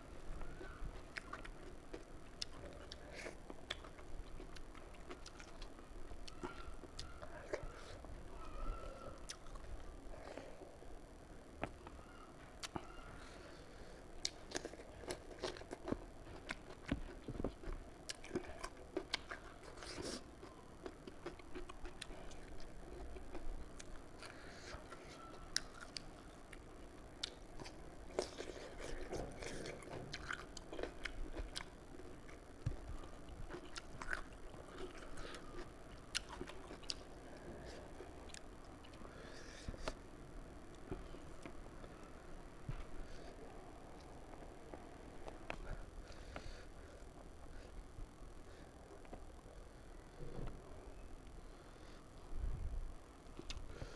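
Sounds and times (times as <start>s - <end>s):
person chewing food: 0.3s - 8.1s, 9.1s - 10.6s, 14.1s - 40.0s, 53.2s - 53.9s.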